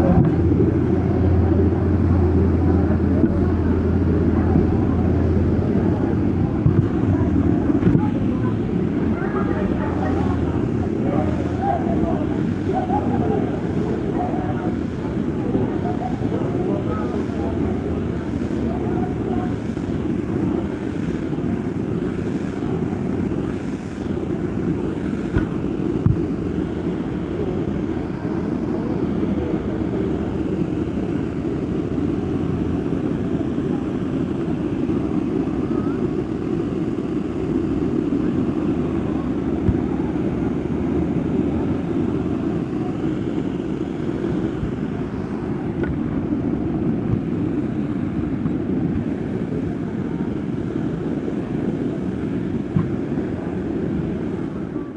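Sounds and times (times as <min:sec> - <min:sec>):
waterfall roaring: 0:00.0 - 0:30.7.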